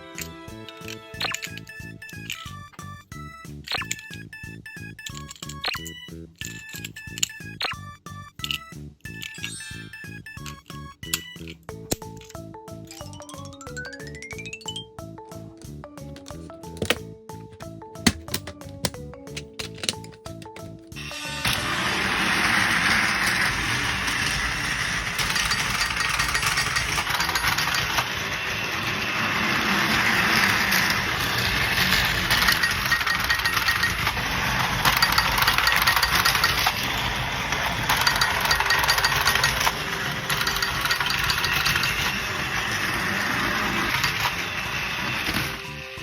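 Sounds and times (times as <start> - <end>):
toy train motor whir: 0.0 - 2.6, 3.7 - 7.6, 21.0 - 46.0
toy train wheels clicking: 0.0 - 2.8, 3.6 - 7.7, 18.1 - 46.0.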